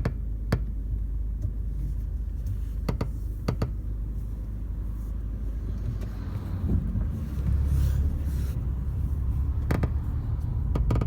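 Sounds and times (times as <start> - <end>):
road rumble inside car: 0.0 - 11.0
plastic seat creaks: 9.6 - 10.0, 10.7 - 11.0.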